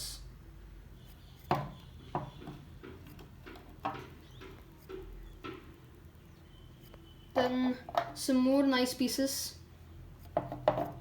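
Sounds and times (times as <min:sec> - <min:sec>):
rocks knocking on hard surface: 0:10.4 - 0:11.0.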